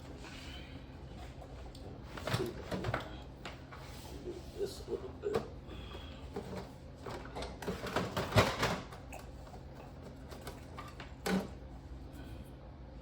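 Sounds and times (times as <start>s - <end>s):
faint steady hum: 0.0s - 13.0s.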